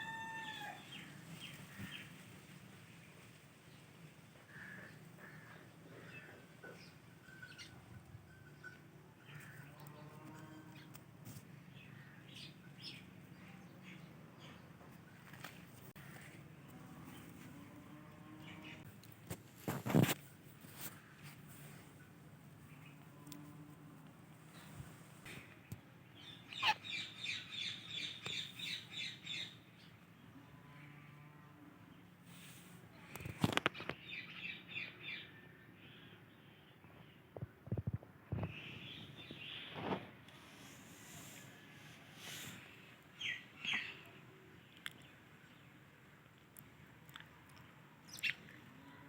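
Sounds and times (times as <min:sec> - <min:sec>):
parrot squawking: 0:26.5 - 0:26.8.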